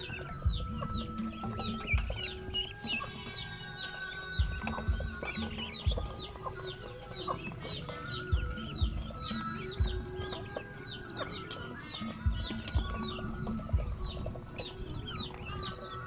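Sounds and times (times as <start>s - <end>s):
poultry peeping: 0.0s - 16.0s
dull low thumps: 0.3s - 2.8s, 4.4s - 6.4s, 8.3s - 10.5s, 12.2s - 15.6s.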